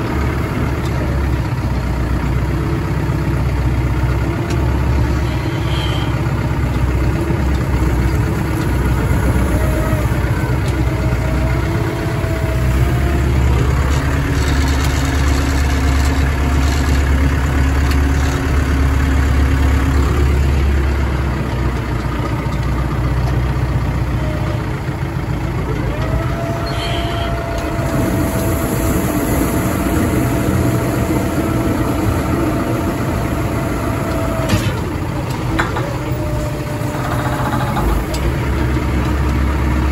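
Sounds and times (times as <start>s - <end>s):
heavy machinery engine hum: 0.0s - 39.9s.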